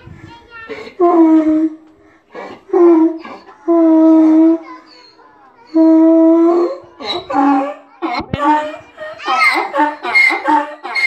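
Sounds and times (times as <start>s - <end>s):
donkey braying: 2.7s - 11.0s.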